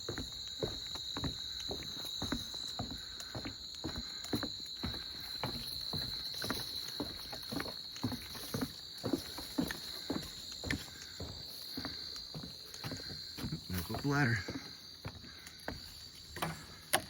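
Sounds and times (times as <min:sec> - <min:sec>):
footsteps on wooden boardwalk: 0:00.0 - 0:17.0.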